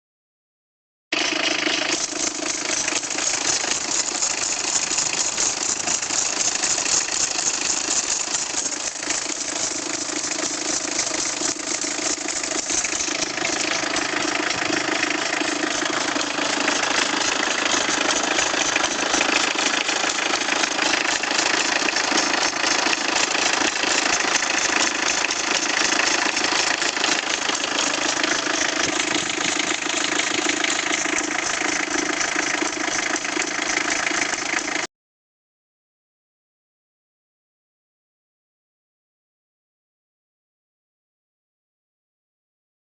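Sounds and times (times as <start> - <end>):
diesel engine idling: 1.2 - 34.9.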